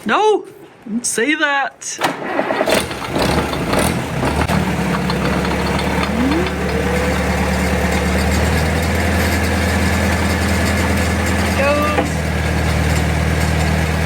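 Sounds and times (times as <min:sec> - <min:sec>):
small gasoline engine idling: 0:02.8 - 0:14.0.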